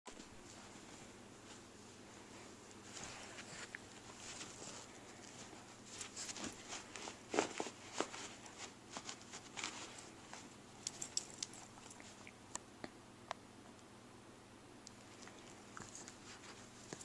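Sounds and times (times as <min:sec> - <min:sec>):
paws pattering and scratching: 0:00.1 - 0:12.4, 0:14.9 - 0:17.0.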